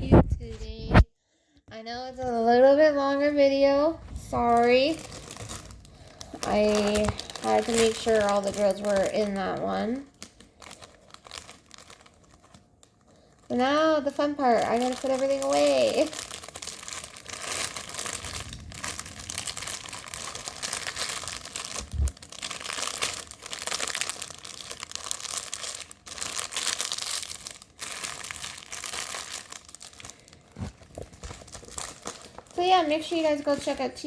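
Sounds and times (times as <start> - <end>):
plastic packaging crinkling: 3.4 - 34.0.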